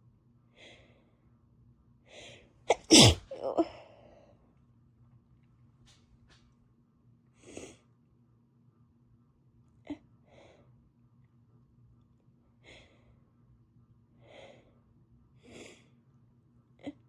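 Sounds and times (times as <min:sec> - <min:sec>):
woman breathing softly: 0:00.5 - 0:01.2, 0:02.1 - 0:02.5, 0:14.2 - 0:14.8.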